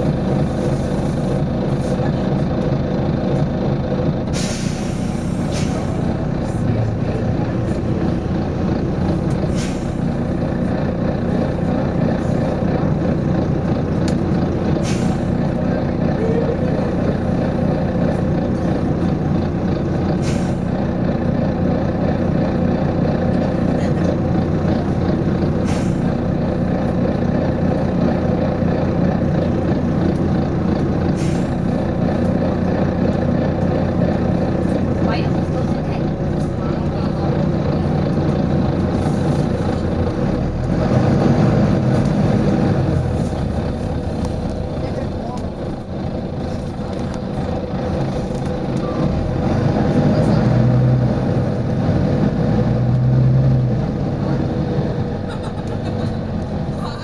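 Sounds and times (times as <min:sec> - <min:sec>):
bus diesel engine running: 0:00.0 - 0:57.0
compressed air hiss: 0:04.4 - 0:06.0.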